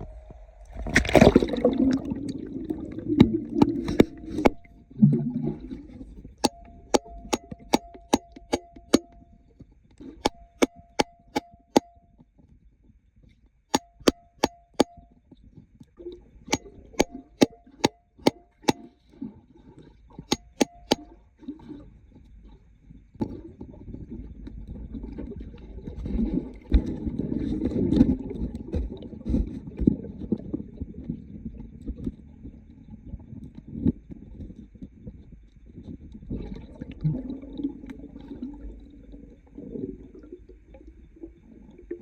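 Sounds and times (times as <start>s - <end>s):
hammer striking rock: 3.9s - 4.6s, 6.4s - 9.2s, 10.2s - 12.0s, 13.7s - 15.1s, 16.5s - 18.9s, 20.3s - 21.1s.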